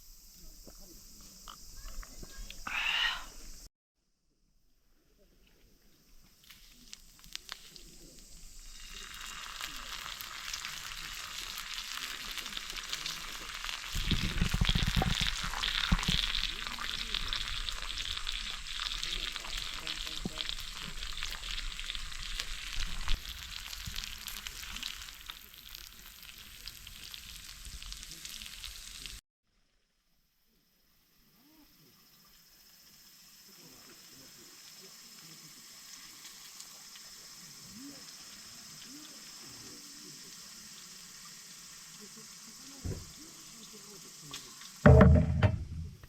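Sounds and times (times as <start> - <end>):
meat sizzling on griddle: 6.3 - 29.2, 30.9 - 45.1
low knocks: 44.9 - 46.0.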